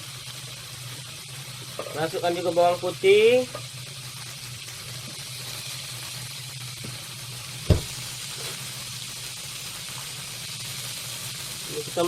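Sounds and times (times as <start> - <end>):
food sizzling in a pan: 0.0 - 12.0
sharp knock: 7.7 - 8.0.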